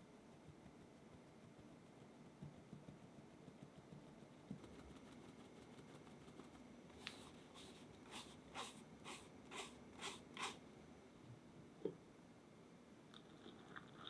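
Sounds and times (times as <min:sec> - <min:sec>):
utensil swishing through batter: 0:00.3 - 0:10.6.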